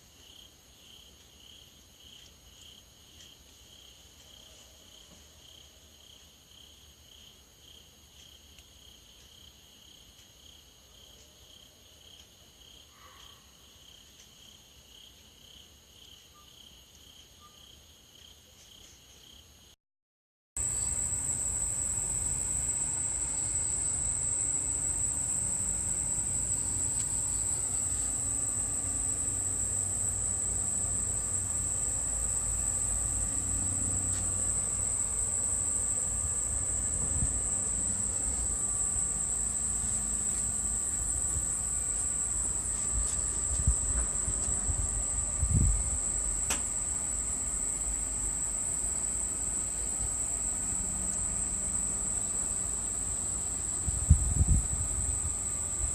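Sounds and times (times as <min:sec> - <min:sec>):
faint hum: 0:20.6 - 0:55.9
high-pitched insect chorus: 0:20.6 - 0:55.9.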